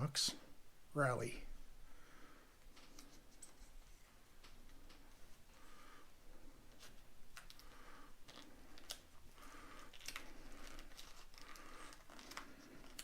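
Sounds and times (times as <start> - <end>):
plastic crinkling: 6.7 - 13.0.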